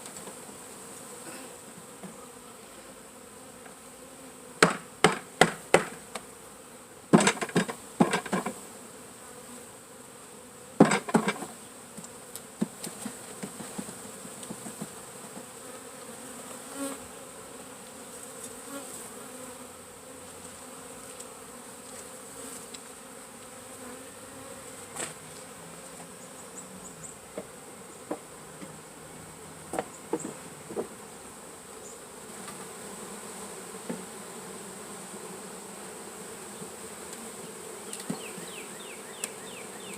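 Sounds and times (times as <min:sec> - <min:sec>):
bees buzzing: 0:00.0 - 0:39.9
wooden knocks and clatters: 0:07.2 - 0:08.5, 0:10.8 - 0:11.5.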